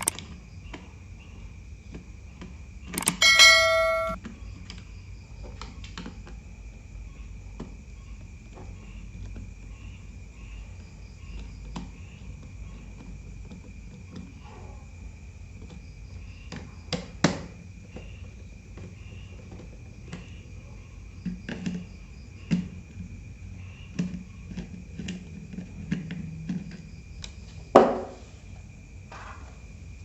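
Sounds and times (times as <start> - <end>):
clicks and knocks of small parts: 0.0 - 0.4, 1.9 - 4.8
thin high chirr: 3.0 - 4.2.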